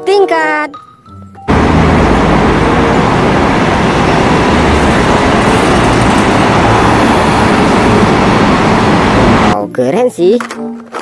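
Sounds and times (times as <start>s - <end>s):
bus engine running: 1.5s - 9.6s
road and traffic noise: 1.5s - 9.6s.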